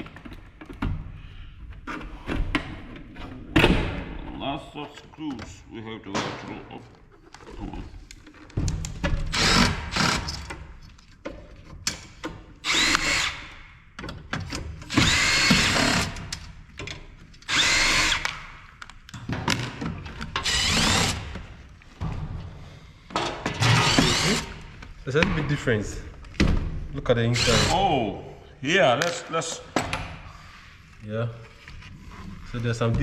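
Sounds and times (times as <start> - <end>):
power screwdriver whining: 9.3 - 10.5, 12.6 - 13.4, 14.9 - 16.3, 17.4 - 18.4, 20.3 - 21.3, 23.6 - 24.6.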